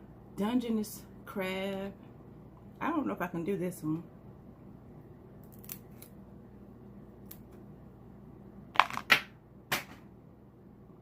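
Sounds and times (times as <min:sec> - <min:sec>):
crab shell cracking: 0:05.4 - 0:06.2.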